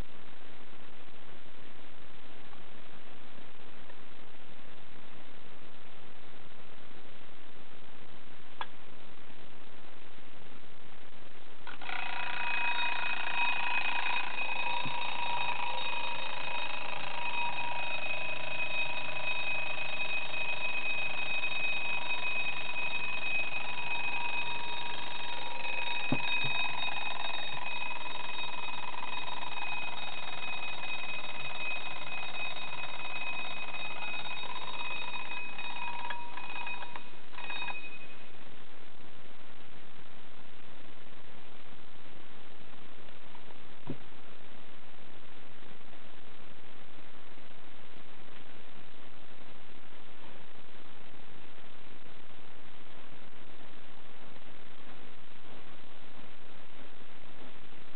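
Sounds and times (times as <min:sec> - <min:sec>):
alarm clock clicks: 0:11.7 - 0:38.1
alarm clock ringing: 0:11.7 - 0:38.2.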